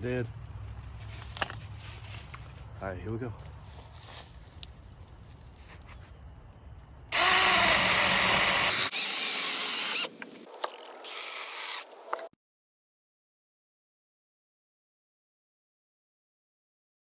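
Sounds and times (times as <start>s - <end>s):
mini chainsaw cutting wood: 7.1s - 10.2s, 11.0s - 11.9s.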